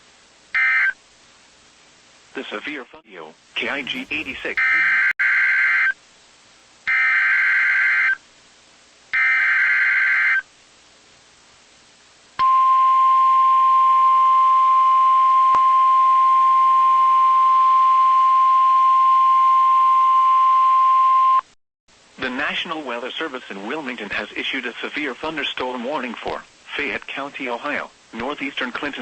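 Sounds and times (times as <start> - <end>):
data bursts: 3.8 - 5.1
steady alert tone: 3.8 - 5.1.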